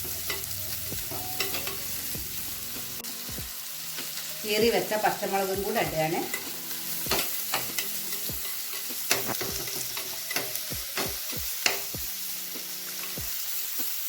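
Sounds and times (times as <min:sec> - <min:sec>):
vegetables sizzling in hot oil: 0:00.0 - 0:14.0
spoon scraping a pan: 0:00.2 - 0:02.1, 0:05.8 - 0:12.0.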